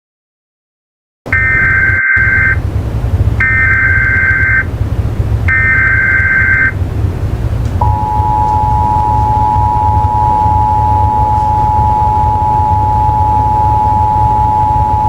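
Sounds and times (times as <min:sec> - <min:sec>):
harsh two-tone attention signal: 0:01.3 - 0:02.6, 0:03.4 - 0:04.7, 0:05.5 - 0:06.8, 0:07.8 - 0:15.0
low hum: 0:01.3 - 0:15.0
buzzy screeching data bursts: 0:03.4 - 0:04.6, 0:05.5 - 0:06.7.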